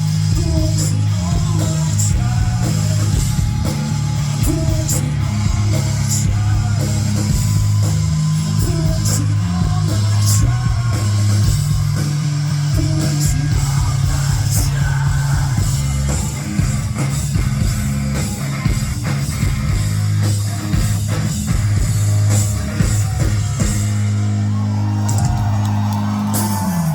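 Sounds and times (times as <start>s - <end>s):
person singing: 0.0s - 12.0s, 12.6s - 16.7s
bass guitar: 0.0s - 26.9s
distorted electric guitars: 0.0s - 26.9s
drum kit: 0.0s - 26.9s.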